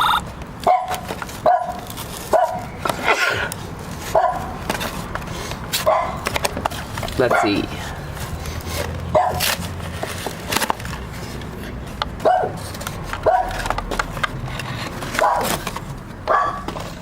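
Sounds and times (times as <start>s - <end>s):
sharp knocks and scrapes: 0.8s - 17.0s
packaging being handled: 0.9s - 17.0s
voices: 2.3s - 9.4s.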